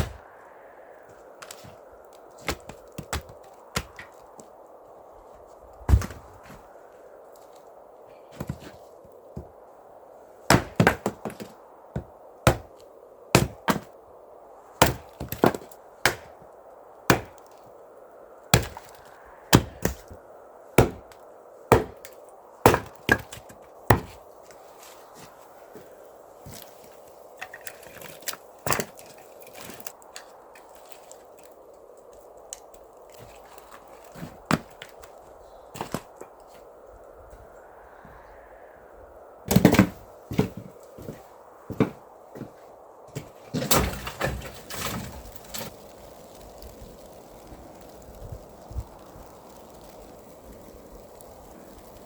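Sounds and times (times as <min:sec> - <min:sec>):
steady low hiss: 0:00.0 - 0:52.0
wood being chopped: 0:02.4 - 0:04.2, 0:05.9 - 0:06.3, 0:10.5 - 0:12.7, 0:13.3 - 0:13.9, 0:14.8 - 0:16.4, 0:17.1 - 0:17.5, 0:18.5 - 0:20.0, 0:20.8 - 0:24.2, 0:34.5 - 0:34.9, 0:39.5 - 0:40.5.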